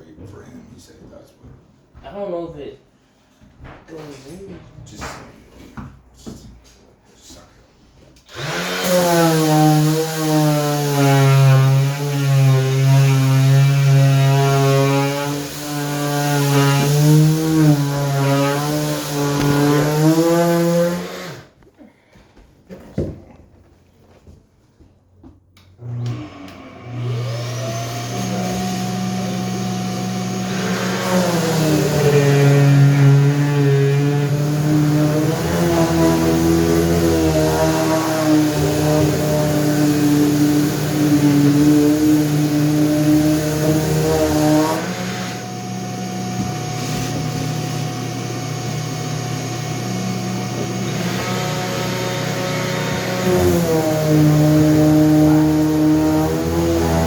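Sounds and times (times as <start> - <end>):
electric motor whine: 8.3 - 21.5, 25.8 - 57.0.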